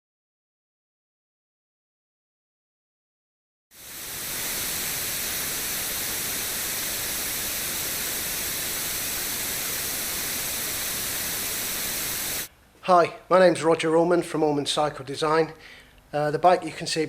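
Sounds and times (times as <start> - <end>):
steady hiss: 3.8 - 12.5.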